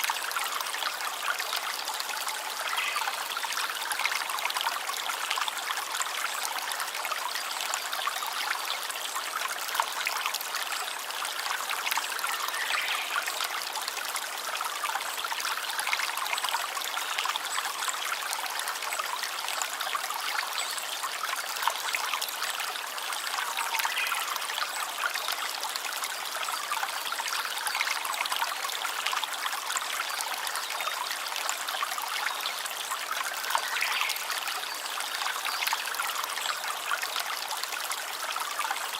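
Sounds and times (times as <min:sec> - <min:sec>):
stream of water babbling: 0:00.0 - 0:38.9.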